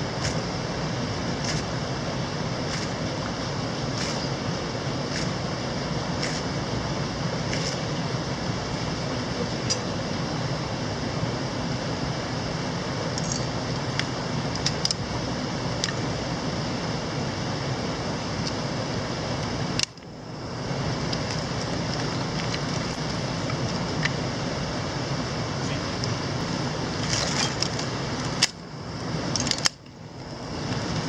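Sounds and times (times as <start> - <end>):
mountain stream rushing: 0.0 - 29.6
small sharp clicks: 19.8 - 20.1.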